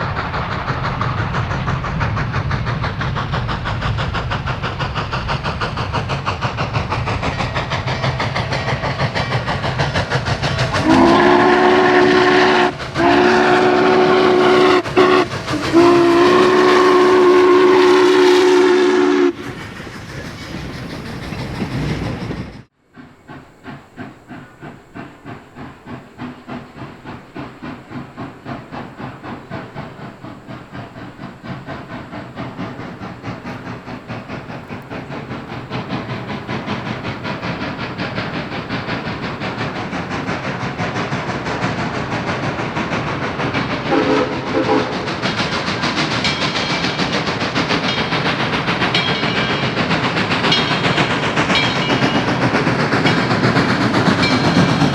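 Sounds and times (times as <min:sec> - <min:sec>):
steam locomotive exhaust beats: 0:00.0 - 0:54.9
steam whistle chord: 0:10.8 - 0:19.4, 0:43.9 - 0:44.9.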